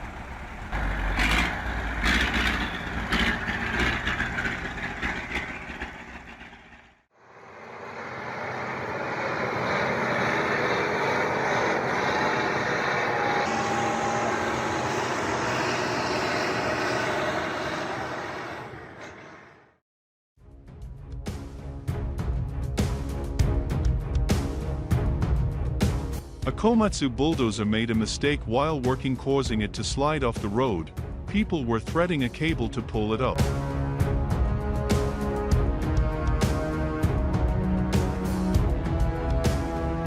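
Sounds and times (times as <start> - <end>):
heavy vehicle engines under load: 0.0 - 7.0.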